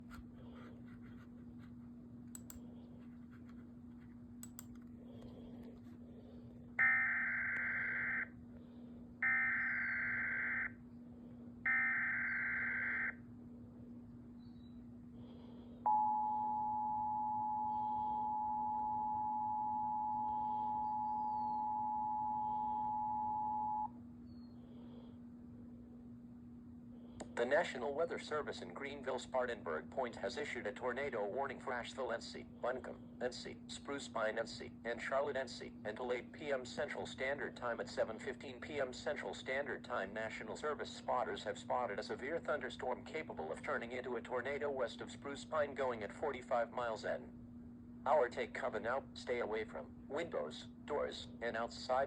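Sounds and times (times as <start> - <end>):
low hum: 0.1 - 29.9.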